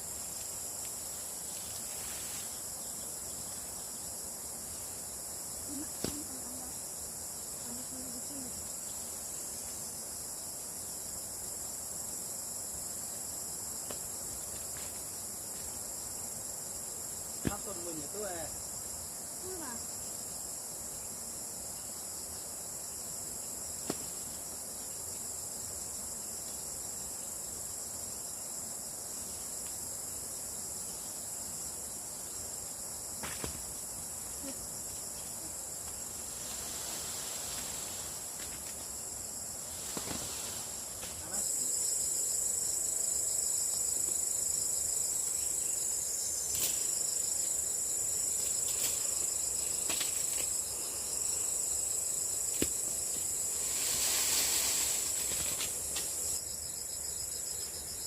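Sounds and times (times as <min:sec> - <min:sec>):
high-pitched insect chorus: 0:00.0 - 0:58.0.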